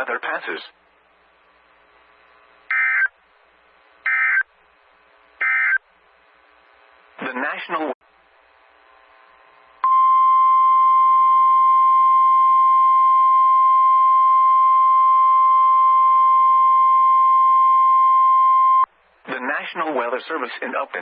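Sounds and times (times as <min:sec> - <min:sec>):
loud steady alarm tone: 0:02.7 - 0:03.1, 0:04.0 - 0:04.5, 0:05.4 - 0:05.8.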